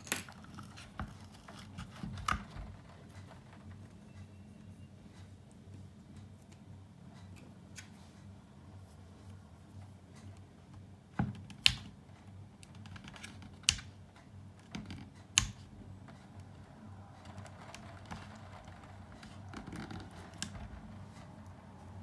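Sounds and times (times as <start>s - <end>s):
scraping and rustling: 17.0s - 22.0s.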